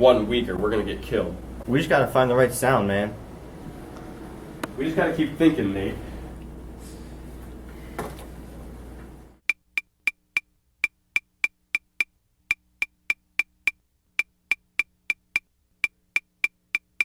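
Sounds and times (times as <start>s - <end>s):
room noise: 0.0s - 9.4s.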